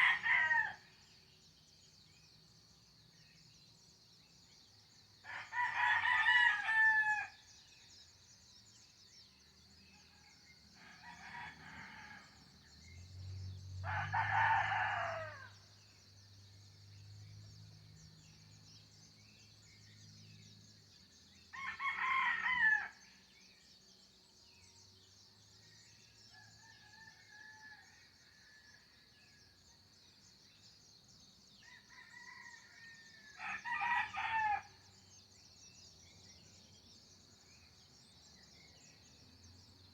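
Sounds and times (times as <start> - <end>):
roosters crowing: 0.0 - 0.8, 5.3 - 7.3, 13.8 - 15.5, 21.6 - 23.0, 31.9 - 34.8.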